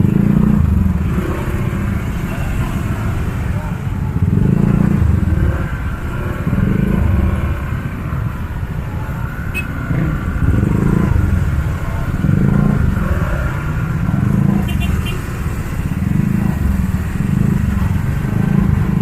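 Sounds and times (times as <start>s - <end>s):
motorcycles and cars passing: 0.0s - 19.0s.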